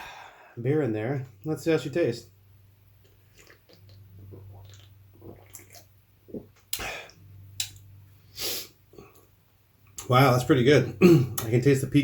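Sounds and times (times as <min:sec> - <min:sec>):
person swallowing: 0:03.4 - 0:07.2.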